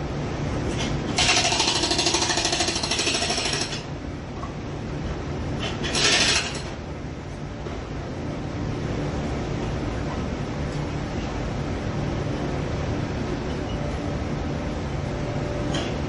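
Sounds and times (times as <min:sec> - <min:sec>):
jackhammer breaking: 0:01.2 - 0:03.8.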